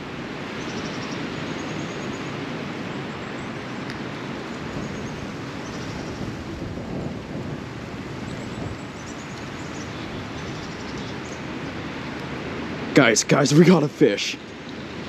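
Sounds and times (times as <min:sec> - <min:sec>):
faint bird chirps: 0:00.6 - 0:02.3, 0:04.5 - 0:06.3, 0:08.3 - 0:11.5.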